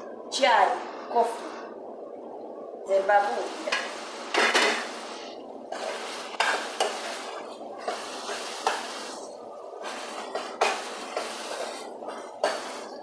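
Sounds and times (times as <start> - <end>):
spoon knocking and scraping pan: 5.8 - 9.0
food sizzling in a pan: 5.8 - 11.9.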